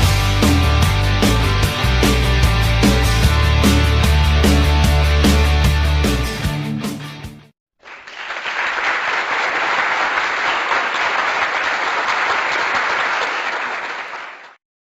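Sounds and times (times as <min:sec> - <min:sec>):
hands clapping: 0:07.8 - 0:14.6.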